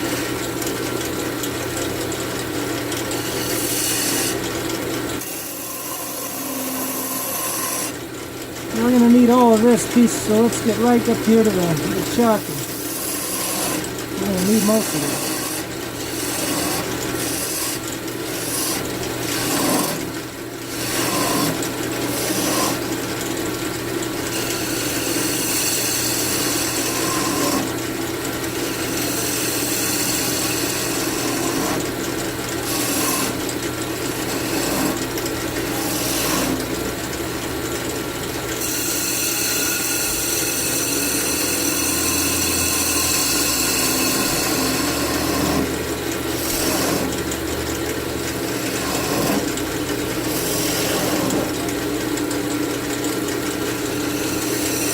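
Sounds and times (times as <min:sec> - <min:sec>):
lathe tool cutting wood hiss: 0:03.3 - 0:04.4, 0:05.3 - 0:08.0, 0:12.0 - 0:20.0, 0:24.3 - 0:27.7, 0:28.6 - 0:31.8, 0:38.6 - 0:45.7, 0:53.8 - 0:54.9
lathe motor low hum: 0:40.6 - 0:54.9.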